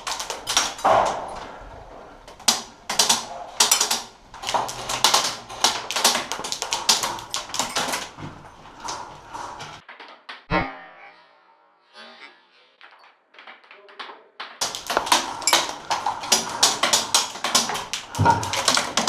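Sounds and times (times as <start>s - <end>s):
sharp clicks and taps: 13.4s - 19.0s.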